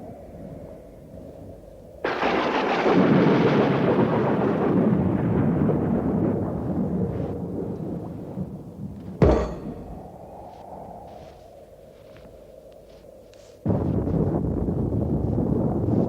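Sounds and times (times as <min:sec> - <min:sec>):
thunderclap rumbling: 0:02.0 - 0:10.5.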